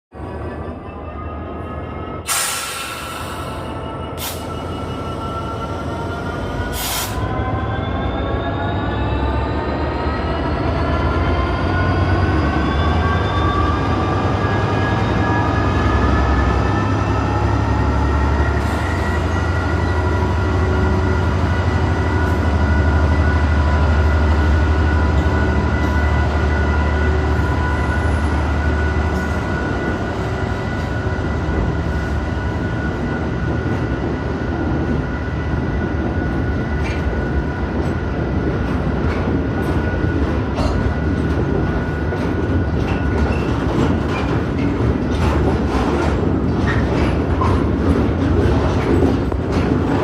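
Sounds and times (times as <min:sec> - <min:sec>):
diesel train engine rumble: 0:00.1 - 0:50.0.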